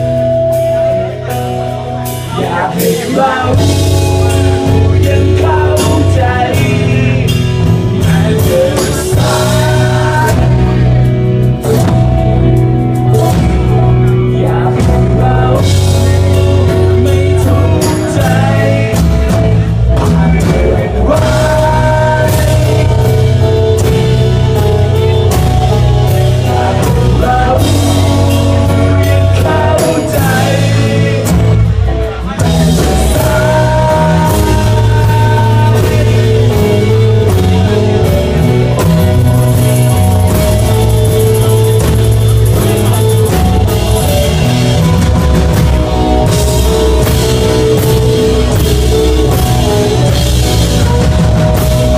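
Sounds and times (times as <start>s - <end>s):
bass guitar: 0.0s - 51.9s
drum kit: 0.0s - 51.9s
electric guitar: 0.0s - 51.9s.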